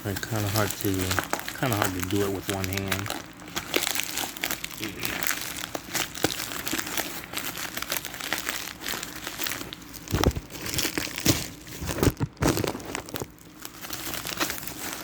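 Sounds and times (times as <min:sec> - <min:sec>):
packaging crinkling: 0:00.0 - 0:15.0.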